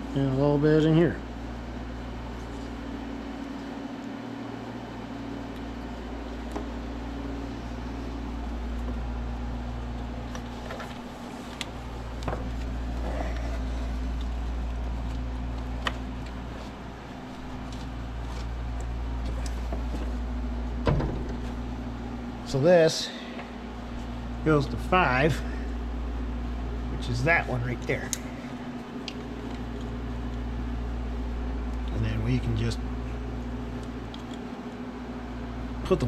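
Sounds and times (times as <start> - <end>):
low mechanical hum: 0.0 - 36.0
faint clicks of wires handled: 9.9 - 20.2, 27.7 - 30.5, 33.7 - 34.8.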